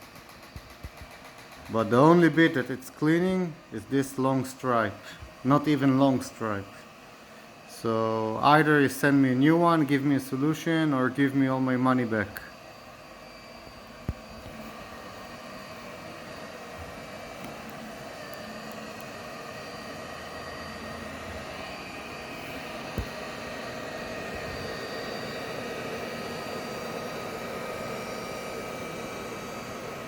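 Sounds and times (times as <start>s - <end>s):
robot cleaner motor whir: 11.8s - 30.0s.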